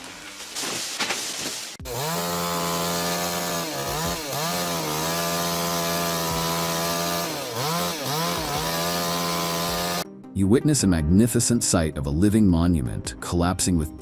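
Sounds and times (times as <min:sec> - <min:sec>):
chainsaw running at high revs: 0:01.8 - 0:10.0.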